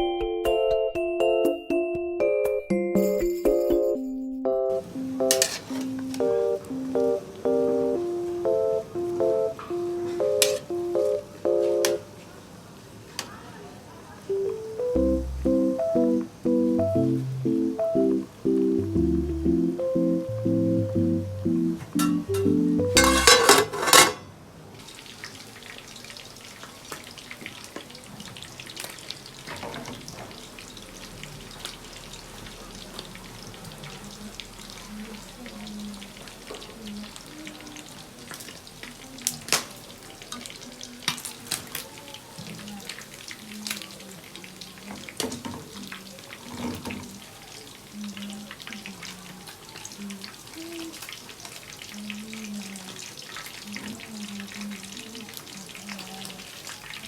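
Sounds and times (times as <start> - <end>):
food sizzling in oil: 4.9 - 6.2, 9.8 - 11.3, 22.0 - 41.6
oil popping and crackling: 24.8 - 41.9.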